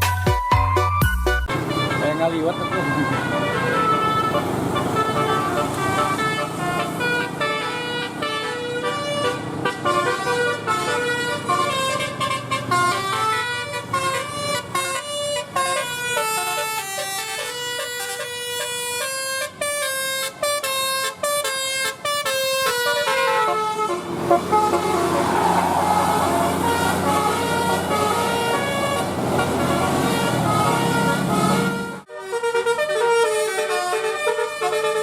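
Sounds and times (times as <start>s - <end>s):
multi-tone air horn melody: 1.4s - 35.0s
noisy rush: 24.4s - 28.4s.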